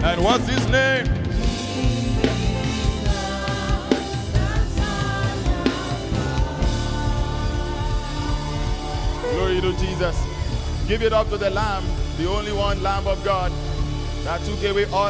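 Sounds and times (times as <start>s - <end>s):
gospel band with drum kit: 0.0s - 15.0s
people singing: 1.3s - 10.7s.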